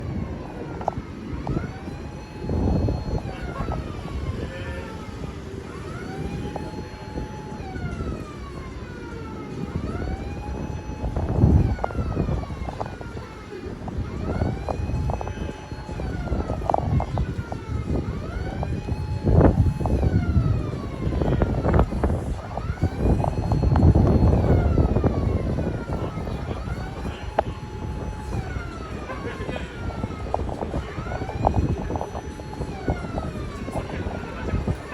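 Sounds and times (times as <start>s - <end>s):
low rumbling noise: 0.0s - 34.9s
siren wailing: 0.0s - 34.9s.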